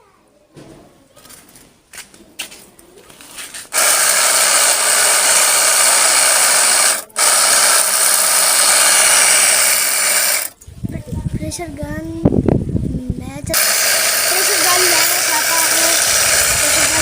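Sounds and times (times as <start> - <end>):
pressure washer spraying water: 3.7 - 10.6, 13.5 - 17.0.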